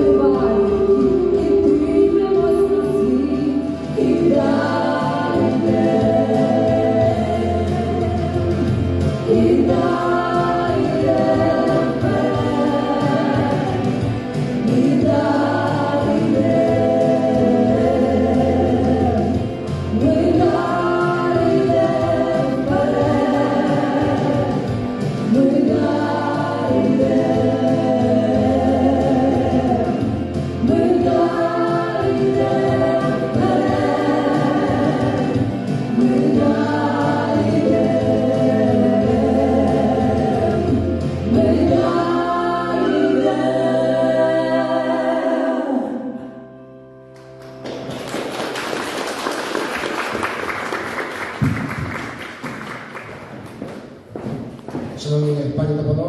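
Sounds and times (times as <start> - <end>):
steady bass: 0.0 - 44.8
choir singing with accompaniment: 0.0 - 53.0.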